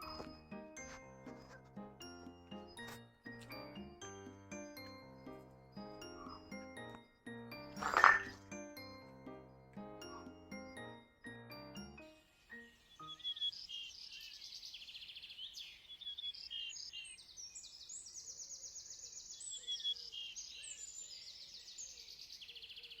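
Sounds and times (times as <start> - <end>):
background music: 0.0 - 13.8
small birds chirping and trilling: 12.0 - 23.0.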